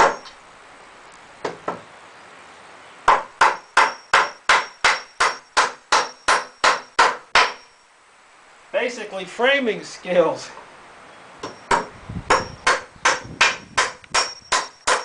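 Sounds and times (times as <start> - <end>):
hammer striking nails into wood: 0.0 - 0.3, 3.1 - 7.6, 11.4 - 15.0.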